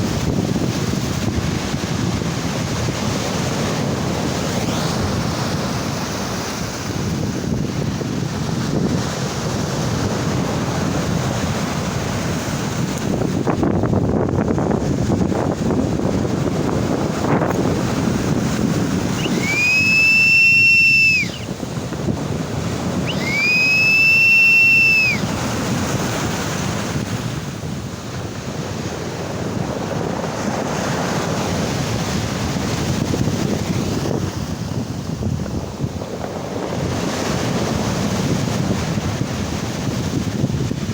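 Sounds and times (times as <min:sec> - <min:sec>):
waves: 0:00.0 - 0:40.9
wind buffeting microphone: 0:00.0 - 0:40.9
loud high whistles: 0:19.1 - 0:21.6, 0:23.0 - 0:25.4.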